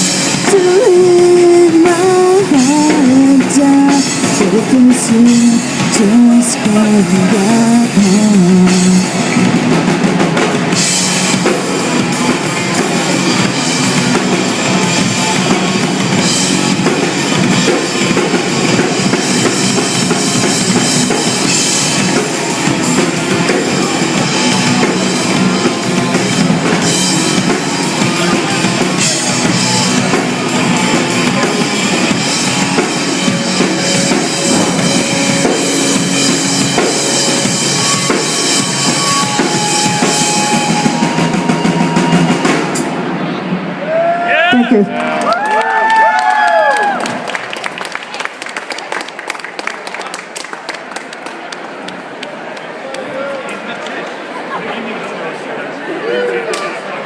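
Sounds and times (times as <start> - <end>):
live rock band playing: 0.0 - 43.8.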